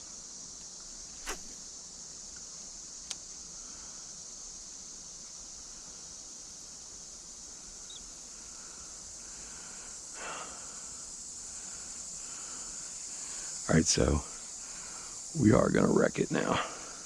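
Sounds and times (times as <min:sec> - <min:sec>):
insects trilling: 0:00.0 - 0:17.0
brief rustle: 0:01.2 - 0:01.6.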